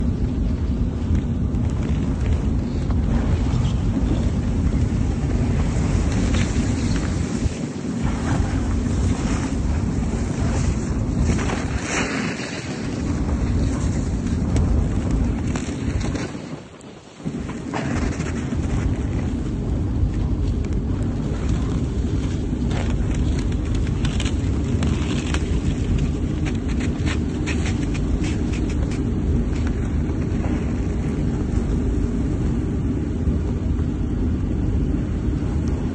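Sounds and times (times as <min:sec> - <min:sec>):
wind buffeting microphone: 0:00.0 - 0:35.9
hull grinding through ice: 0:01.2 - 0:16.6, 0:17.2 - 0:19.5, 0:21.1 - 0:32.2
ice cracking: 0:21.2 - 0:31.0.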